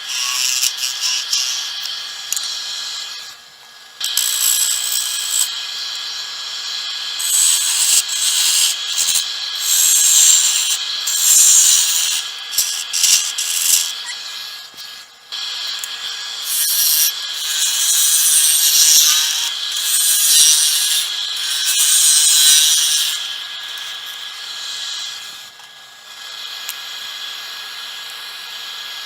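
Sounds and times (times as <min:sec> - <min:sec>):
lathe tool scraping wood: 0:00.0 - 0:01.7, 0:07.2 - 0:15.0, 0:15.8 - 0:25.4.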